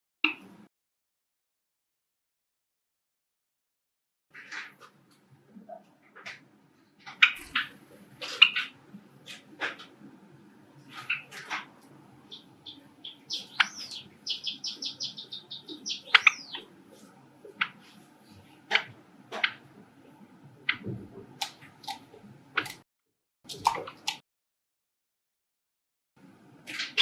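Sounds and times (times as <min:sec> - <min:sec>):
sparrows chirping: 0:07.1 - 0:09.4, 0:10.9 - 0:11.6, 0:12.2 - 0:18.7.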